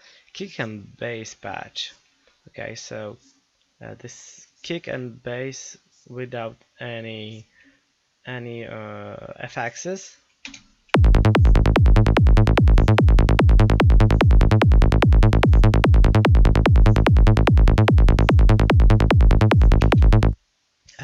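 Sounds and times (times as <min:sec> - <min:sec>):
electronic kick and bass pulse: 0:11.0 - 0:20.4.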